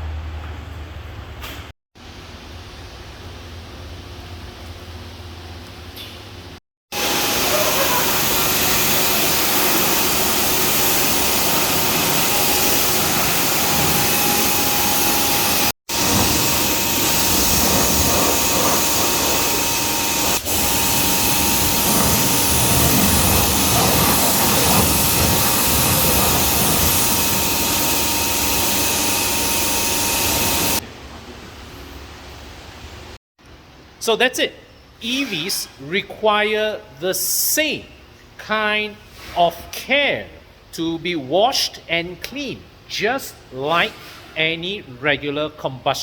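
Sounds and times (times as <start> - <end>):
hiss of spraying water: 7.0 - 30.8.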